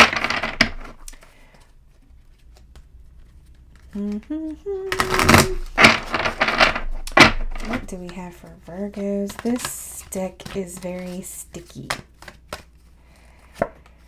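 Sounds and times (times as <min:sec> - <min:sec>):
cards being shuffled: 0:00.0 - 0:14.0
person humming: 0:03.9 - 0:06.0.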